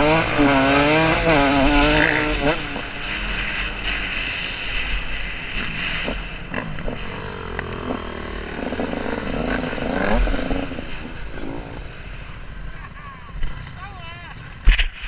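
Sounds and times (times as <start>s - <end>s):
motorcycle engine running: 0.0s - 15.0s.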